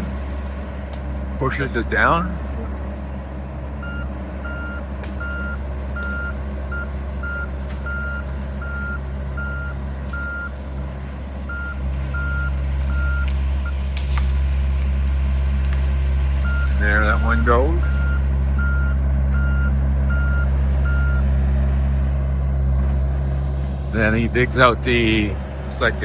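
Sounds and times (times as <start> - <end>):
diesel engine running: 0.0 - 26.0
motion alarm beeping: 3.8 - 10.5, 11.5 - 13.3, 16.4 - 21.2
wood cracking: 11.8 - 18.5.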